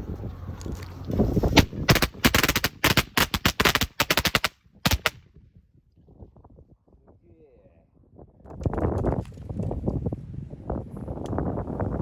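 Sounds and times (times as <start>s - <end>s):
fireworks crackling bangs: 1.4s - 5.2s.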